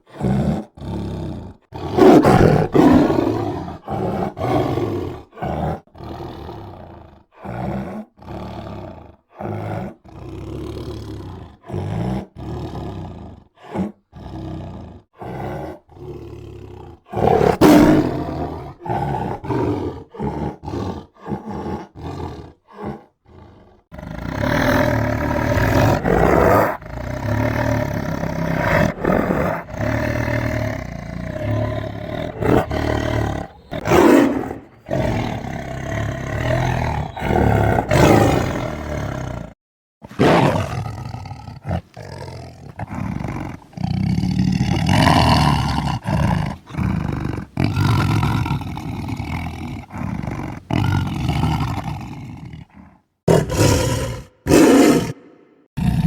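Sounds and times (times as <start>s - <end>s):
tiger roaring: 0.0s - 56.0s.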